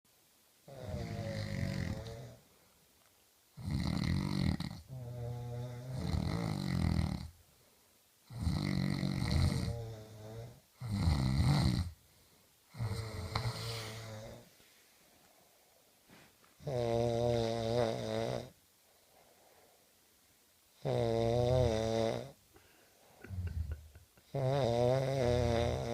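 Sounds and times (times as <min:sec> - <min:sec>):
deep snore: 0:00.7 - 0:02.4, 0:03.6 - 0:07.3, 0:08.3 - 0:12.0, 0:12.7 - 0:14.5, 0:16.6 - 0:18.6, 0:20.8 - 0:22.4, 0:23.2 - 0:25.9
high rattly snore: 0:00.7 - 0:02.4, 0:08.3 - 0:11.9, 0:20.8 - 0:22.4, 0:24.3 - 0:25.9.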